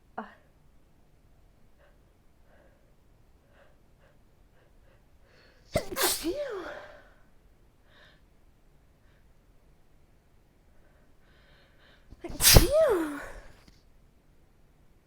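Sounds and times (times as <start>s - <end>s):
person sneezing: 5.7s - 7.1s, 12.2s - 13.6s
faint short breaths: 10.8s - 13.6s.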